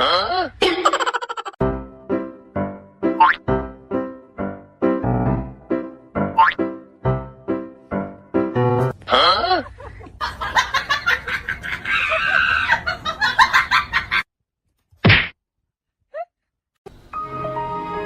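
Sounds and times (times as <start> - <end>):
chickens clucking and squawking: 11.1 - 14.0.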